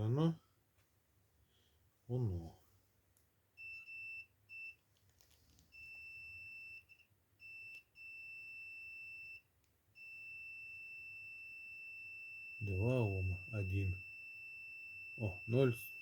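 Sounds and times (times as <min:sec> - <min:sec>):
multimeter continuity beeps: 0:03.6 - 0:04.8, 0:05.7 - 0:16.0.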